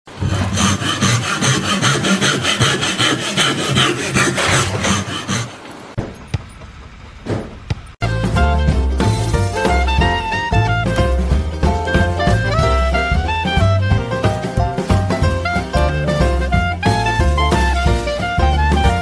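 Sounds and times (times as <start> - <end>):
rapid scraping strokes: 0.1 - 6.0
swing music: 8.0 - 19.0.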